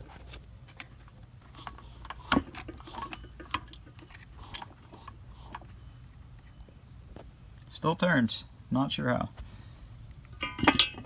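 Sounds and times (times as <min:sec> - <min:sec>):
low steady hum: 0:00.0 - 0:11.0
metal engine parts clicking: 0:00.8 - 0:05.7, 0:10.3 - 0:11.0.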